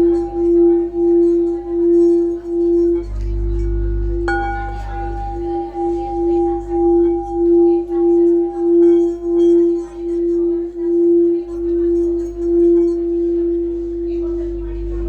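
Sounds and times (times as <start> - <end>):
singing bowl ringing: 0.0 - 15.0.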